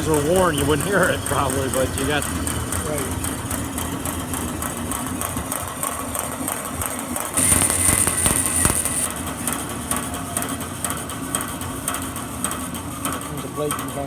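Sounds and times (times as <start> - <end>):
bandsaw running: 0.0 - 6.2, 7.1 - 14.0
loud hiss: 7.4 - 9.1.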